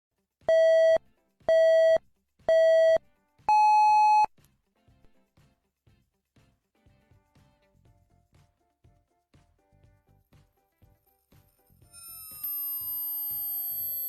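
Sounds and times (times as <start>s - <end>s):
electronic countdown beeps: 0.5s - 4.3s.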